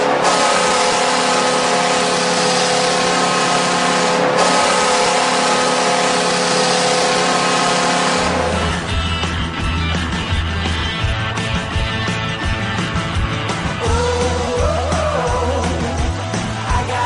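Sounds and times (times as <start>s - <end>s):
arena goal horn blast: 0.0s - 9.0s.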